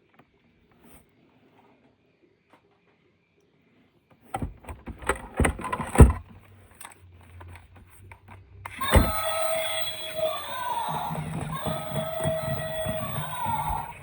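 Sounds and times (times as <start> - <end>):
hard plastic knocks and clatters: 4.3 - 6.4
background music: 8.7 - 14.0.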